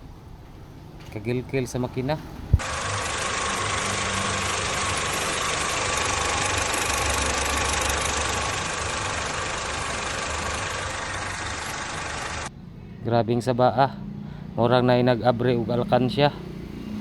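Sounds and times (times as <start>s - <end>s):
car engine with metallic rattle: 2.3s - 12.5s.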